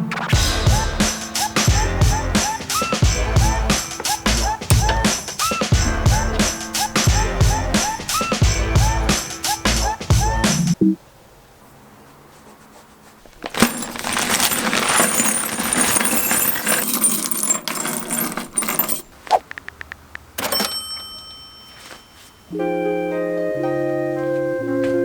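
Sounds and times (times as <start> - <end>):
small metal parts clinking: 13.4 - 19.4
quick clicks: 19.2 - 20.6.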